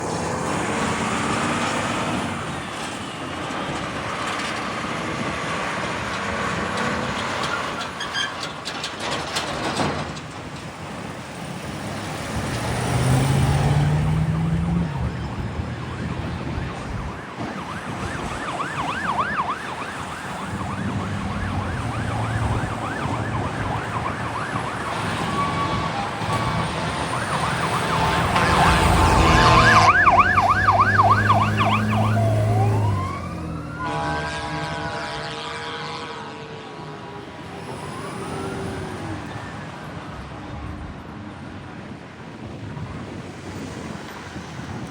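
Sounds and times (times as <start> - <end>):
fire engine diesel engine: 0.0 - 44.9
siren warbling yelp: 14.1 - 36.0.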